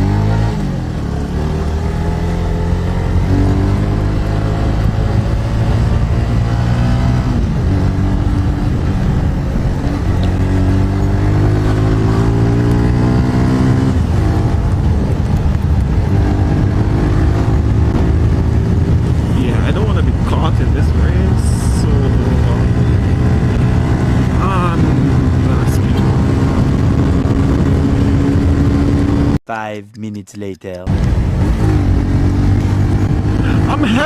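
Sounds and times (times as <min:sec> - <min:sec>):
motorcycle engine shifting gears: 0:00.0 - 0:29.4, 0:30.9 - 0:34.0
steady rushing noise: 0:13.9 - 0:29.4.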